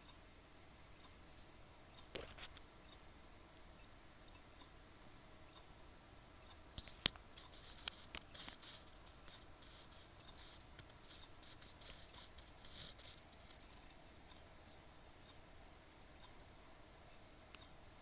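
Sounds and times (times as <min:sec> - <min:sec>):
scratchy clicking and chirping: 0:00.0 - 0:00.2, 0:01.9 - 0:03.0, 0:03.8 - 0:04.7, 0:05.5 - 0:05.7, 0:06.4 - 0:15.4, 0:16.2 - 0:16.4, 0:17.1 - 0:17.8.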